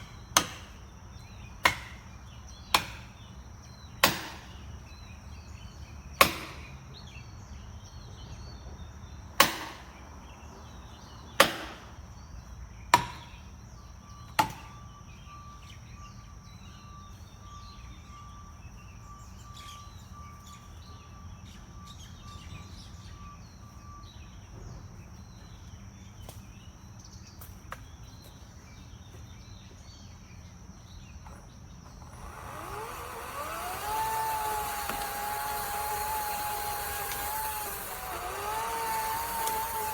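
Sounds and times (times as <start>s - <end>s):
motor whine spinning up: 31.9s - 39.9s.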